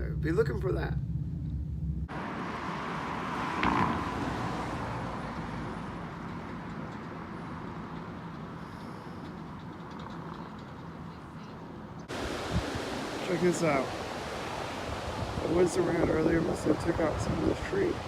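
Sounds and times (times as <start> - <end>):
outdoor rushing noise: 0.0 - 7.8.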